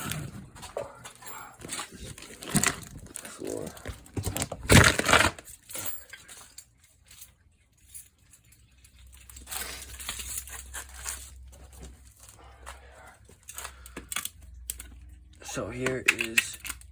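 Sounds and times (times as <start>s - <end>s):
loud clatter with metallic clinks: 4.7s - 11.4s.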